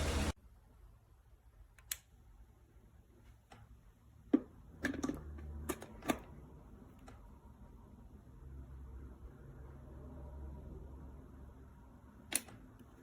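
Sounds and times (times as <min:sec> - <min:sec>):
small sharp clicks and knocks: 0:12.3 - 0:13.0.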